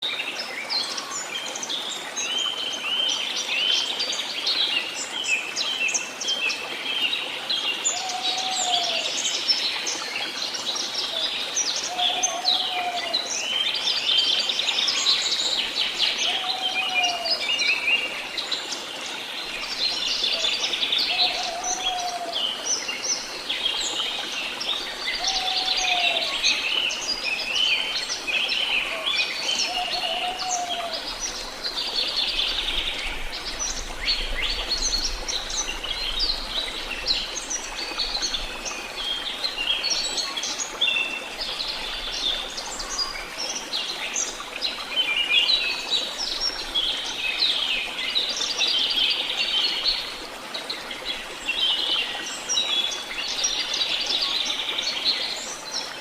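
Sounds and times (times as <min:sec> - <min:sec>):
songbirds chirping and singing: 0:07.7 - 0:09.6, 0:10.7 - 0:18.9, 0:19.5 - 0:44.4.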